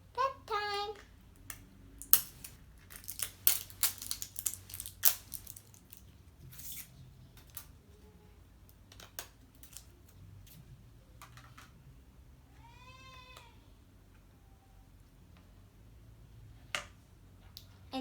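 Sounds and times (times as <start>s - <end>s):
plastic wrapping crinkling and tearing: 2.0s - 6.9s.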